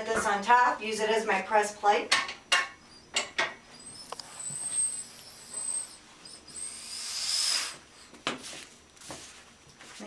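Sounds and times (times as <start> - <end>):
rubber squealing against rim: 3.7 - 7.8.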